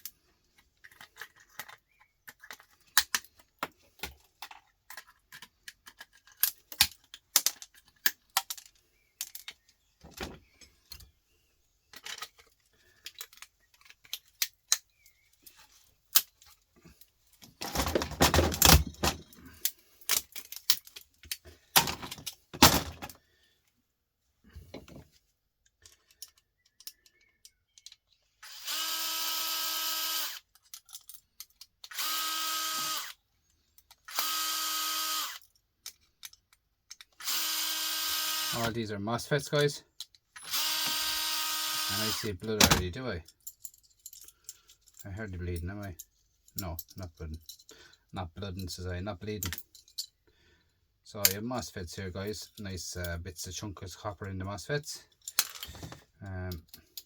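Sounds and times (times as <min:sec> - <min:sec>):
metal parts clinking: 0:00.6 - 0:03.4, 0:04.2 - 0:09.6, 0:11.9 - 0:23.2, 0:30.3 - 0:32.0, 0:35.3 - 0:37.3, 0:40.0 - 0:48.7, 0:49.4 - 0:50.2, 0:55.1 - 0:57.0
rattling and scraping: 0:15.4 - 0:23.2
power drill whirring: 0:28.4 - 0:30.4, 0:31.9 - 0:33.2, 0:34.1 - 0:35.4, 0:37.2 - 0:38.7, 0:40.4 - 0:42.3.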